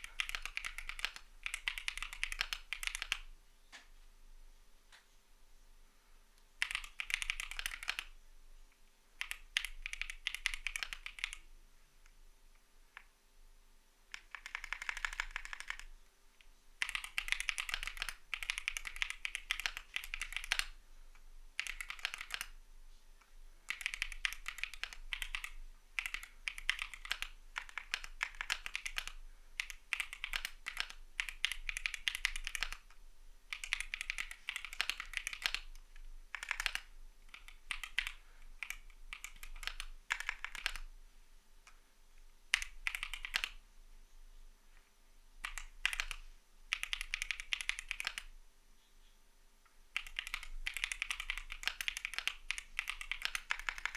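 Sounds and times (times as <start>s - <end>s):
mechanical keyboard typing: 0.0s - 3.3s, 6.6s - 8.2s, 9.2s - 11.5s, 14.1s - 15.9s, 16.8s - 20.8s, 21.6s - 22.6s, 23.7s - 40.9s, 42.5s - 43.6s, 45.4s - 48.3s, 50.0s - 53.9s.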